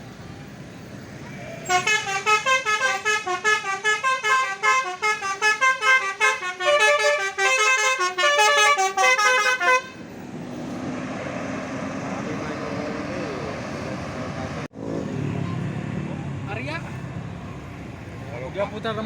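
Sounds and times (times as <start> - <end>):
traffic noise: 0.0 - 19.0
musical bus horn tune: 1.6 - 10.1.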